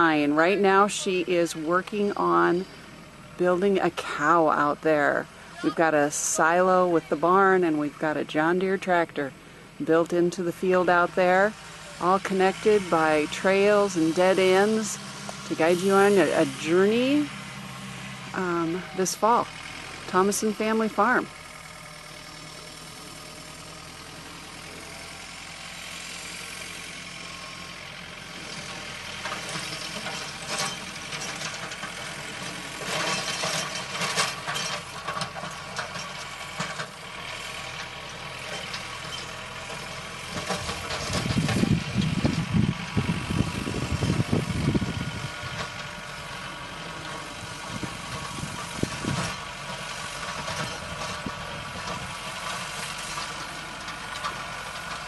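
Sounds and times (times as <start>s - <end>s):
tractor engine running: 0.0s - 55.0s
clatter and crackling: 28.4s - 37.0s.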